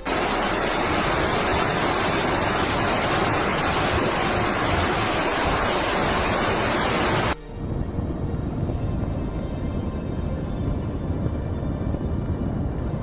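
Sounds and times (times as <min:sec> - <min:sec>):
churning water rushing: 0:00.0 - 0:07.4.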